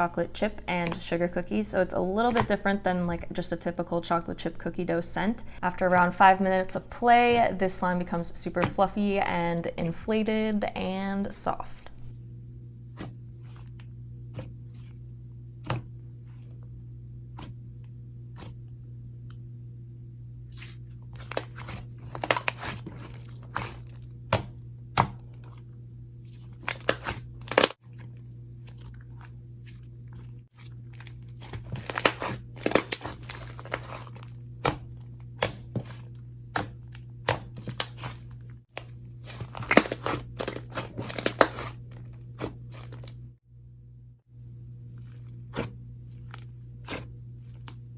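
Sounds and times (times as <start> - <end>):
steady low hum: 0.0 - 47.9
slime crackling and popping: 26.6 - 29.2, 30.6 - 43.2.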